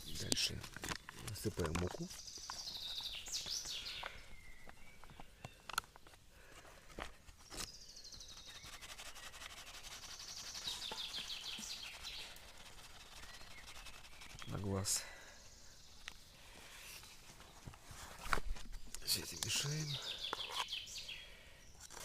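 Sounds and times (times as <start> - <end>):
songbird trilling: 2.1 - 5.5, 7.6 - 14.8, 19.0 - 21.3.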